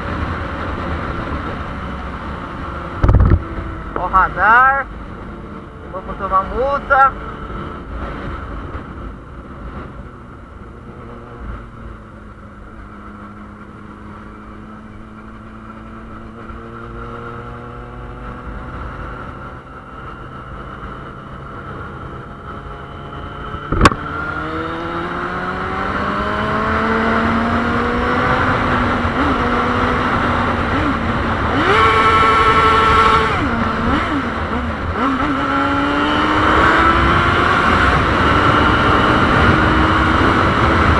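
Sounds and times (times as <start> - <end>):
motorcycle engine: 0.0 - 40.9
sharp knock: 23.6 - 24.1.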